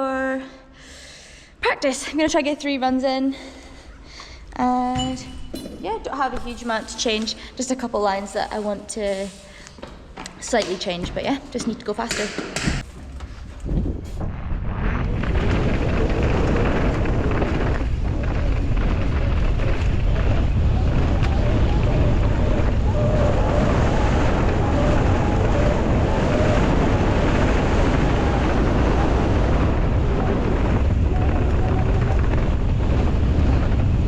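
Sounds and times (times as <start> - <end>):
wind buffeting microphone: 4.6 - 9.1, 10.3 - 34.0
mountain bike rumbling over track: 13.3 - 34.0.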